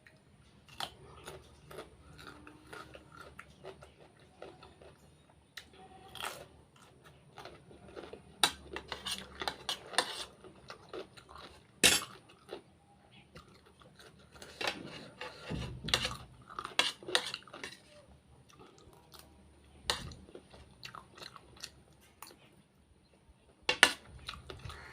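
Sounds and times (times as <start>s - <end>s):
person chewing: 0.0s - 12.6s, 13.4s - 22.6s, 23.8s - 24.9s
cutlery clinking on a plate: 11.8s - 12.2s.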